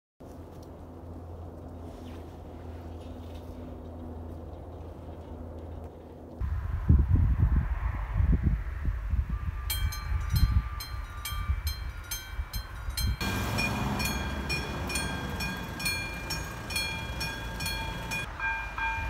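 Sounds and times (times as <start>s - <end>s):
level crossing warning bell: 9.4s - 19.0s.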